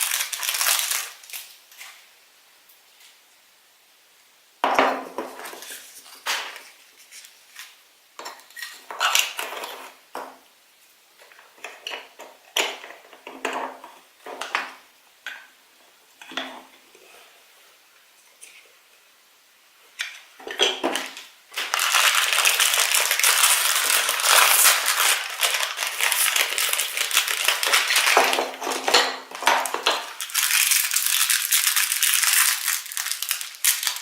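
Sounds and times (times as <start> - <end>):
plastic toys clicking and clattering: 0.0 - 1.5, 11.2 - 14.8, 20.0 - 34.0.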